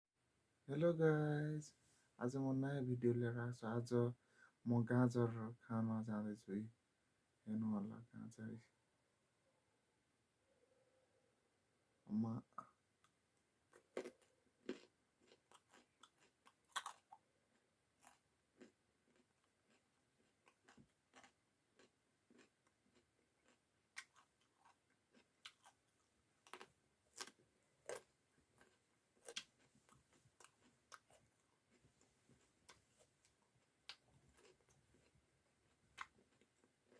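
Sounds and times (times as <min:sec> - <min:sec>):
carrot crunching while chewed: 0:13.7 - 0:25.8, 0:26.4 - 0:36.9.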